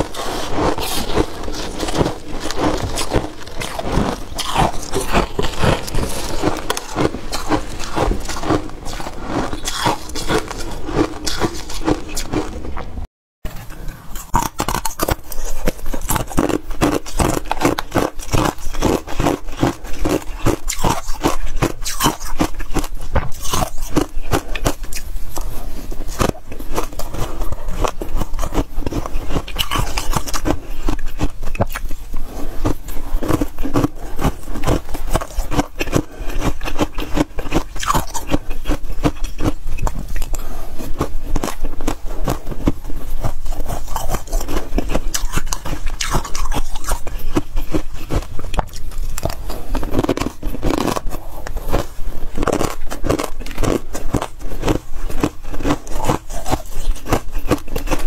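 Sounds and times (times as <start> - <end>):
frost being bitten and chewed: 0.0 - 12.9, 13.5 - 58.0.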